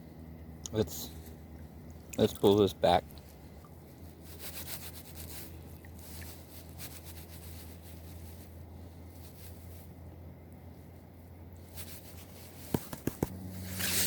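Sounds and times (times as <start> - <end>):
steady low hum: 0.0 - 14.0
sand scraping in gold pan: 4.2 - 8.4, 13.6 - 14.0.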